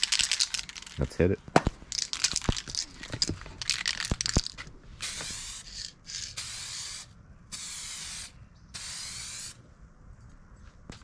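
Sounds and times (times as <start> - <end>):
aerosol can spraying hiss: 5.0 - 9.6.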